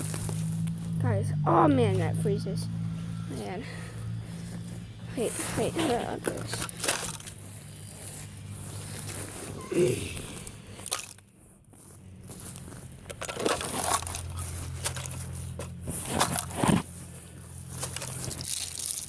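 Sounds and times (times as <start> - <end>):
ice crunching and cracking: 0.0 - 2.2, 4.0 - 19.0.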